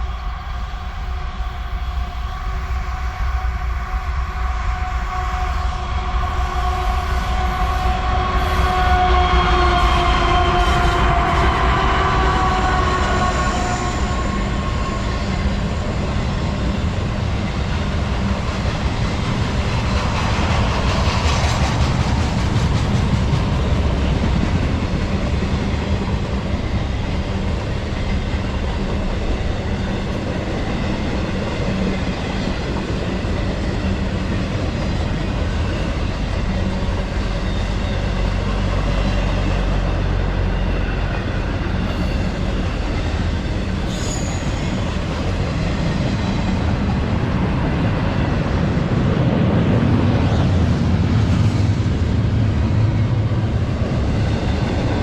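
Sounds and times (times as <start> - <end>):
train horn: 0.0 - 16.7, 43.8 - 45.4
train rumbling: 0.0 - 55.0.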